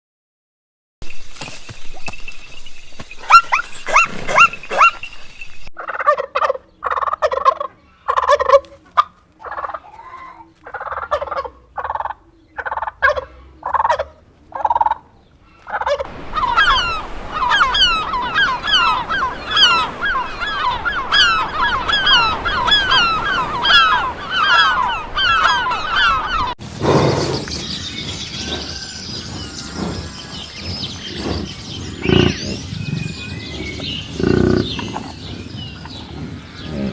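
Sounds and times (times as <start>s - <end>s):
bird calls: 1.7s - 6.0s, 15.5s - 36.9s
noisy animal sound: 3.2s - 36.9s
rapid dense chirping: 16.1s - 26.6s.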